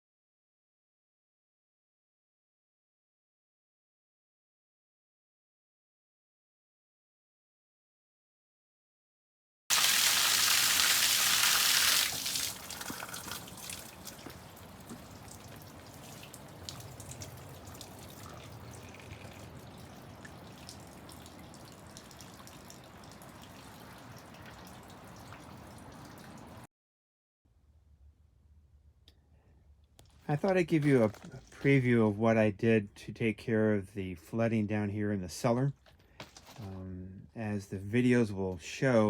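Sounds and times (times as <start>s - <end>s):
water dripping: 9.7s - 26.7s
water rushing: 9.7s - 26.7s
water trickling: 9.7s - 26.7s.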